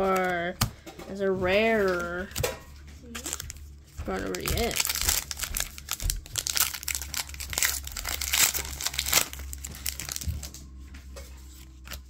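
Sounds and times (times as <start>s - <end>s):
foil wrapper crinkling and tearing: 3.1s - 10.6s.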